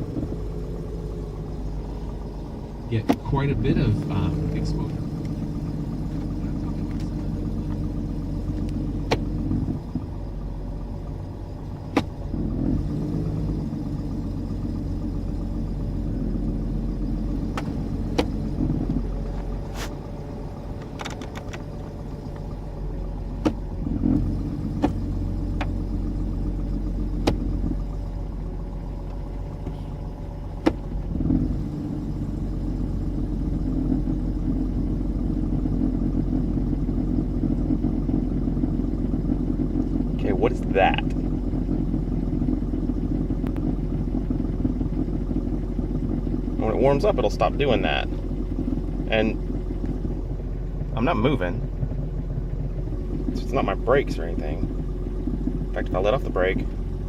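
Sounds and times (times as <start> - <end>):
car engine idling: 0.0 - 57.0
low hum: 0.0 - 57.0
sharp clicks: 20.8 - 21.7.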